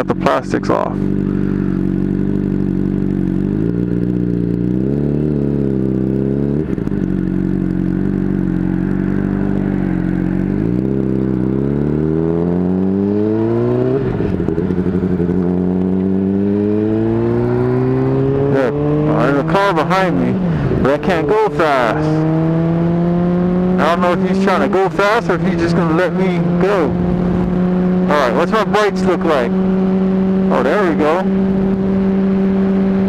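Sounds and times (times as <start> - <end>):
motorcycle engine accelerating: 0.0 - 33.0.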